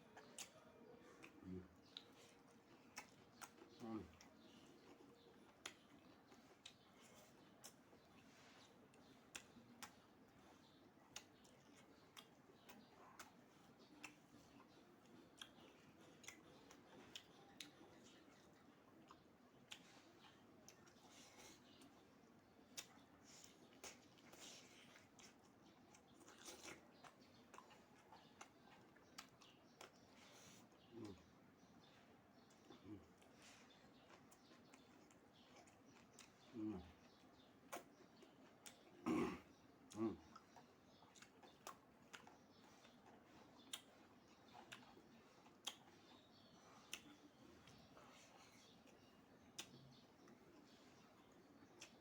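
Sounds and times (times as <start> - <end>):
person chewing: 0.2 - 31.2, 31.9 - 39.0, 39.8 - 52.0
soft mouth smacks: 2.9 - 3.7, 11.1 - 13.4, 37.6 - 38.9, 43.1 - 46.1, 48.8 - 50.4.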